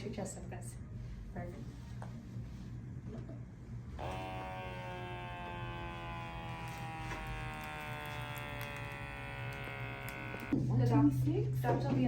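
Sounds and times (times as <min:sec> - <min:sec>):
electric pump motor buzzing: 0:04.0 - 0:10.6.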